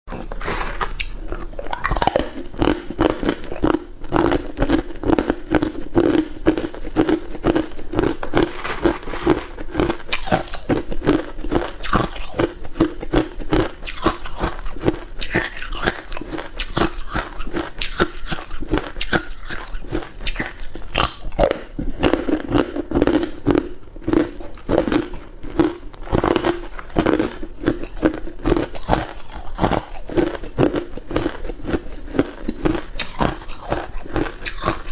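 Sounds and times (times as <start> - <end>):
ice being crunched: 8.0 - 10.7.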